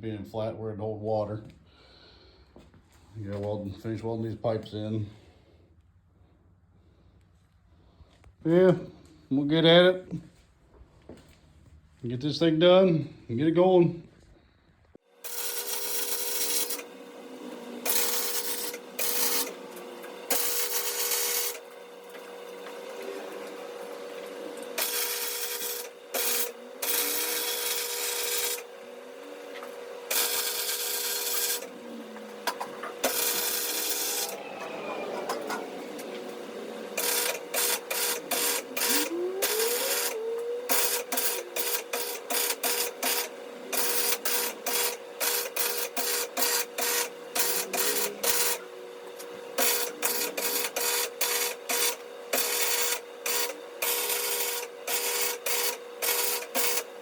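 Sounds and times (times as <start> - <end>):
electric arc welding crackling: 15.2 - 28.7, 30.0 - 34.4, 35.3 - 48.7, 49.4 - 57.0.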